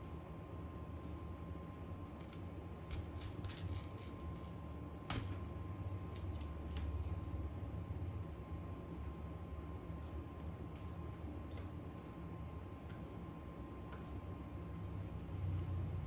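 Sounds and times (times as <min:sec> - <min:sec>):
metal tools clicking and scraping: 0:02.2 - 0:05.4.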